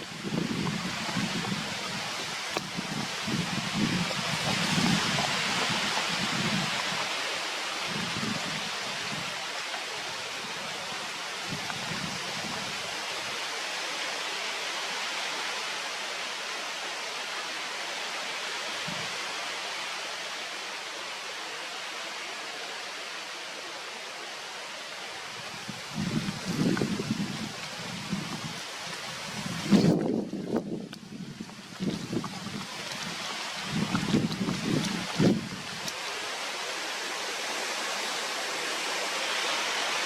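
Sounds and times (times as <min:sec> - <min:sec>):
outdoor hiss: 0:00.0 - 0:40.0.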